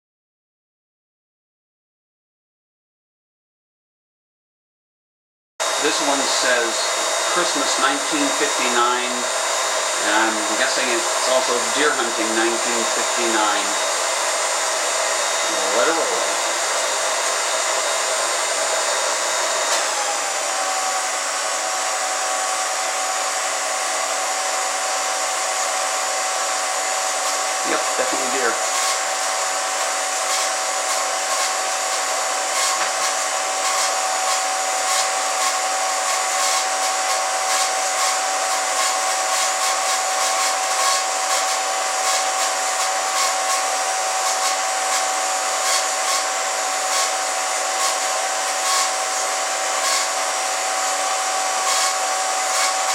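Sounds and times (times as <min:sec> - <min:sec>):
film projector motor whir: 0:05.6 - 0:52.9.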